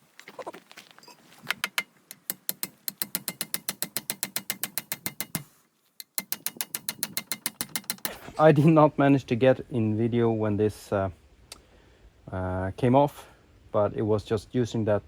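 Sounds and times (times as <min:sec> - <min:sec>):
ratchet wrench clicking: 0:01.6 - 0:08.2.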